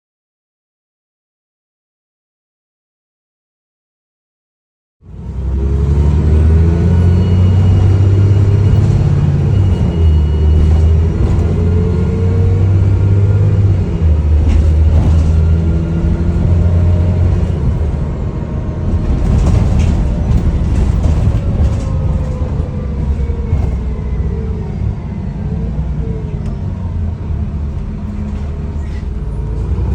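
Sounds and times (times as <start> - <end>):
bus engine running under load: 5.0 - 29.9.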